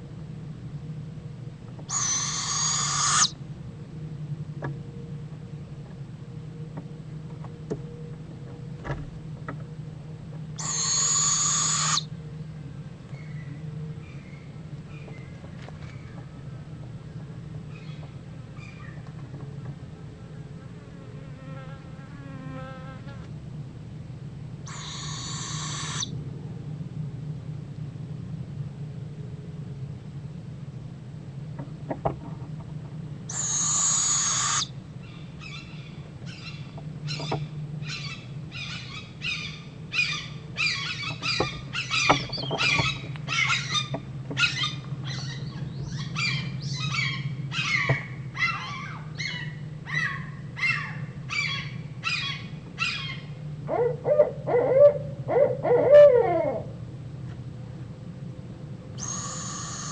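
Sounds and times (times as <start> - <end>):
high bird calls: 1.9 - 3.4, 10.6 - 12.2, 24.7 - 26.2, 33.3 - 56.6, 59.0 - 59.9
owl calls: 1.9 - 3.4, 10.6 - 12.1, 24.7 - 26.2, 33.3 - 56.8, 59.0 - 59.9.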